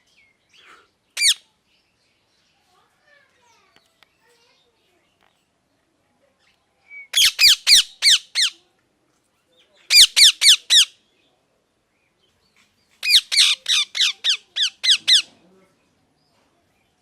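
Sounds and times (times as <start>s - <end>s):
parrot squawking: 1.2s - 1.4s, 7.1s - 8.6s, 9.9s - 10.9s, 13.0s - 15.3s.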